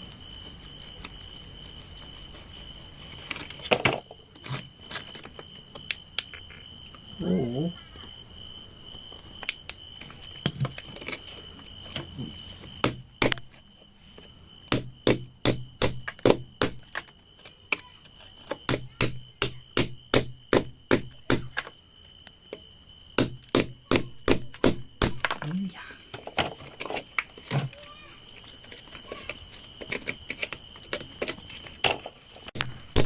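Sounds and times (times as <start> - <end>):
hammer striking rock: 14.7 - 16.8.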